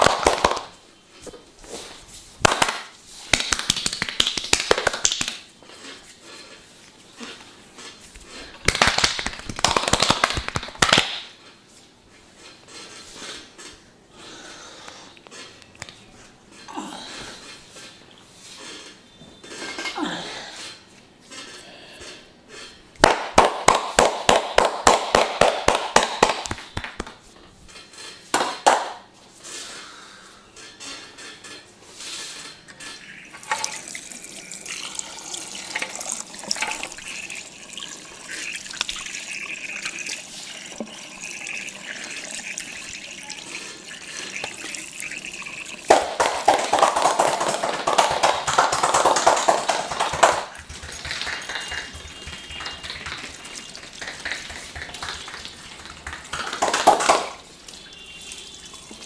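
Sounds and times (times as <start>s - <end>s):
massage percussion slaps: 0.0s - 0.8s, 2.4s - 5.5s, 8.6s - 11.4s, 23.0s - 27.3s, 45.9s - 57.5s.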